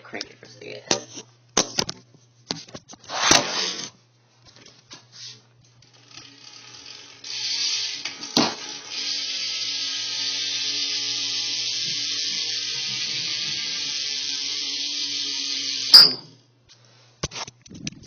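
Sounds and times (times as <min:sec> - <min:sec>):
bike wheel hub whirring: 0:04.9 - 0:16.4
bike drivetrain clicks and rattle: 0:05.8 - 0:09.3.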